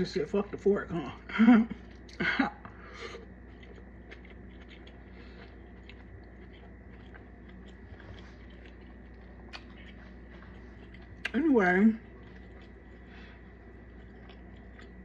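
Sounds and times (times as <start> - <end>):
person chewing food: 0.0 - 15.0
steady low hum: 0.0 - 15.0
small mouth clicks: 9.4 - 9.8.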